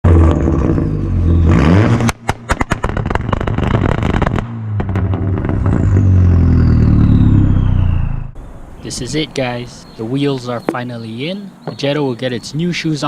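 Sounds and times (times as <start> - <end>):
car engine revving hard: 0.0 - 2.2, 3.6 - 8.4
sharp exhaust cracks: 0.1 - 10.9
turbo whistle: 5.7 - 8.4.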